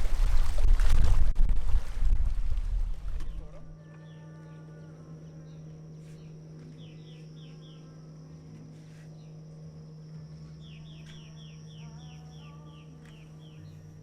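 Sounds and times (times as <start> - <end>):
steady low hum: 0.0 - 14.0
bird chirping: 3.2 - 14.0.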